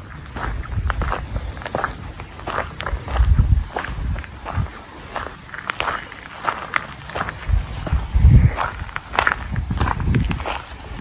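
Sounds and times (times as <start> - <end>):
footsteps outdoors: 0.0 - 11.0
insect chirping: 0.0 - 11.0.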